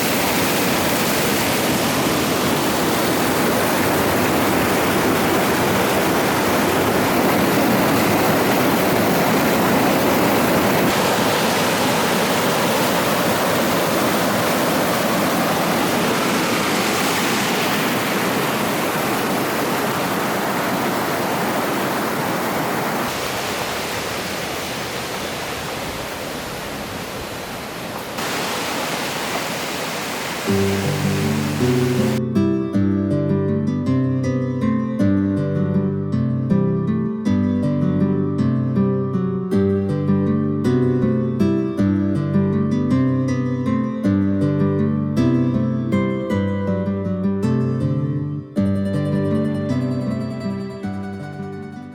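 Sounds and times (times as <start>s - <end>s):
stream and waterfall rushing: 0.0s - 32.2s.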